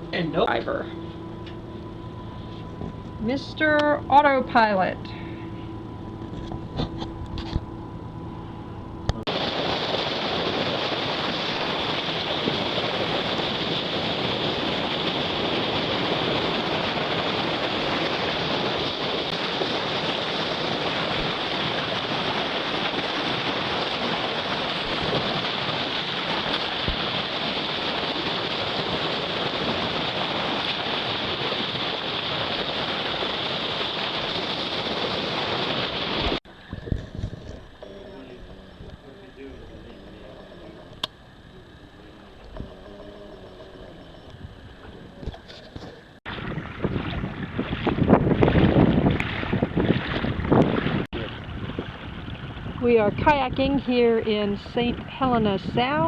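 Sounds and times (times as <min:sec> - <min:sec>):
sea water rushing: 0:09.2 - 0:53.2
wind rushing: 0:46.2 - 0:53.8.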